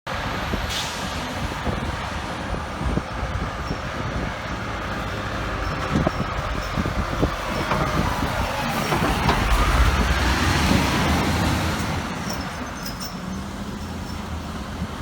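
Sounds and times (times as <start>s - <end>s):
street traffic: 0.0s - 15.0s.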